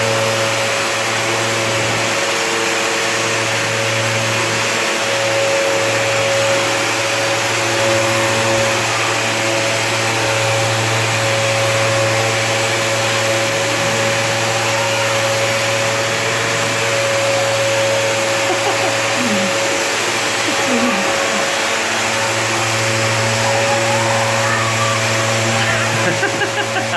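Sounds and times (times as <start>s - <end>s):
vacuum cleaner motor running: 0.0s - 26.9s.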